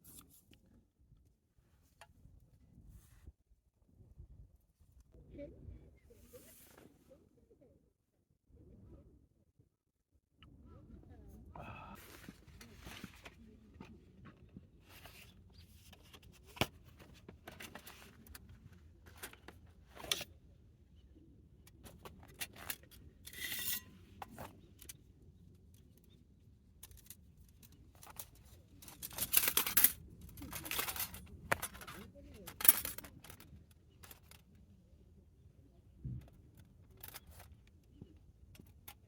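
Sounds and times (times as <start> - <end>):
camp gear clicks and knocks: 12.1 - 20.3, 21.8 - 25.0, 26.8 - 34.5.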